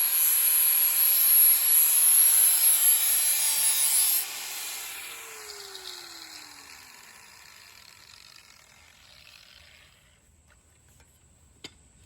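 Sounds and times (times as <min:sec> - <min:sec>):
sander motor spinning down: 0:04.9 - 0:10.2.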